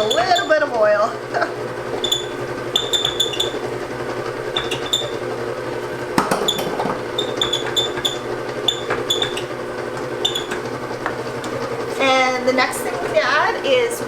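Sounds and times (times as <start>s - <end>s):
high squeaks: 0.0s - 0.6s, 2.0s - 3.7s, 4.5s - 5.2s, 6.2s - 9.5s, 10.2s - 10.6s
electric mixer motor humming: 0.0s - 13.2s.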